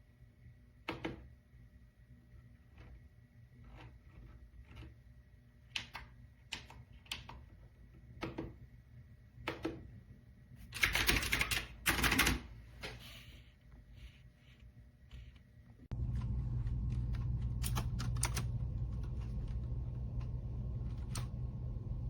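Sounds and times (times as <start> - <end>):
clicky keyboard typing: 10.8 - 12.4, 16.0 - 21.4.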